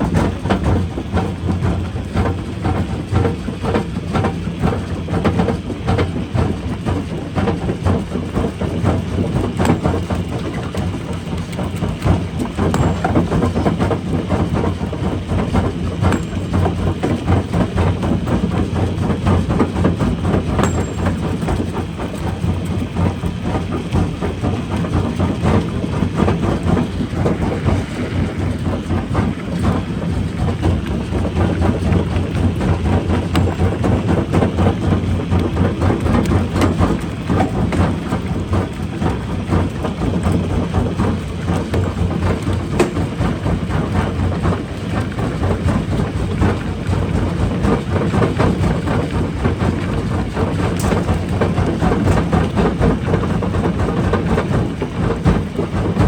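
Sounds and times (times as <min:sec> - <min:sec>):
rock crusher humming: 0:09.1 - 0:37.8.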